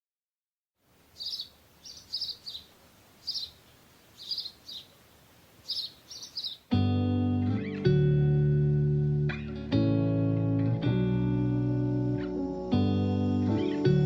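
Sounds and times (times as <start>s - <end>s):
faint background hiss: 0.8s - 6.8s
small bird chirping: 1.1s - 6.7s.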